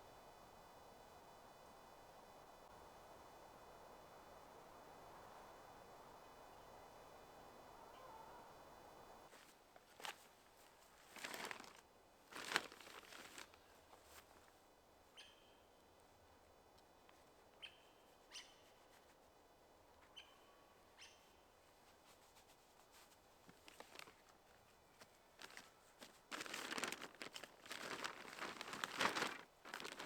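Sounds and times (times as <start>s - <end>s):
soft rustles and taps: 9.3s - 14.6s, 21.9s - 30.0s.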